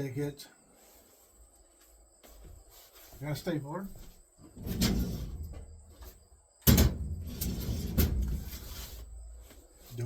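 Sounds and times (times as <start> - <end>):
scraping and rustling: 4.4 - 10.0.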